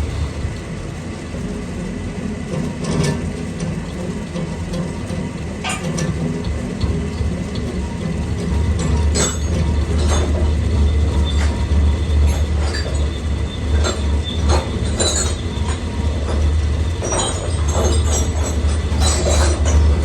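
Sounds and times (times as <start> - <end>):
machinery humming: 0.0 - 20.0
metal scraping and squeaking: 7.9 - 20.0.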